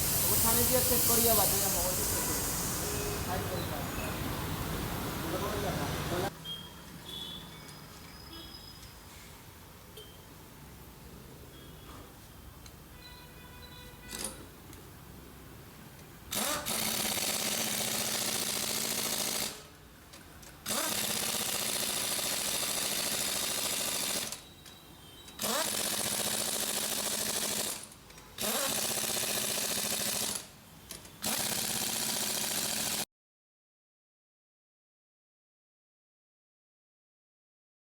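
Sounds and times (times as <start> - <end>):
air impact wrench: 0.0 - 3.3, 14.1 - 14.5, 16.3 - 19.8, 20.5 - 24.5, 25.3 - 33.0.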